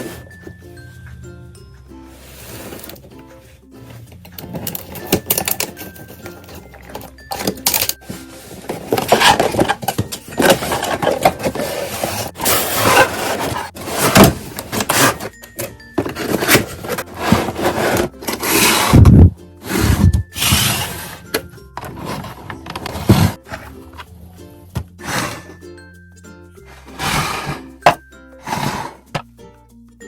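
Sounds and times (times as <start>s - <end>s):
plastic and cardboard crinkling: 4.2s - 24.1s.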